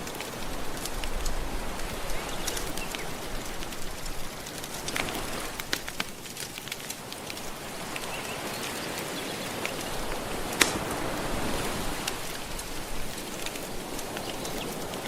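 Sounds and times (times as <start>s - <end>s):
crackling wood fire: 0.0s - 15.0s
soft ocean waves: 0.0s - 15.0s
sharp fire pop: 10.5s - 11.0s.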